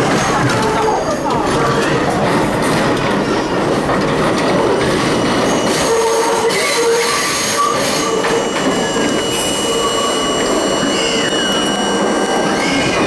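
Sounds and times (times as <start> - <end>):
subway car rumbling on track: 0.0 - 13.0
wheel squeal: 5.0 - 13.0.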